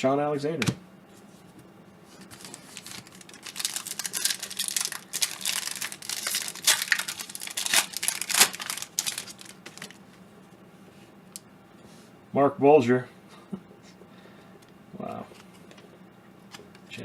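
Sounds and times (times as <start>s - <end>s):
wrapper tearing and crinkling: 2.2s - 10.0s.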